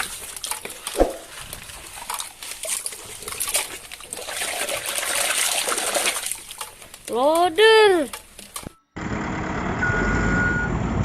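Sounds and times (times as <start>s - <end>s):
plastic toys clicking and rustling: 6.1s - 8.7s.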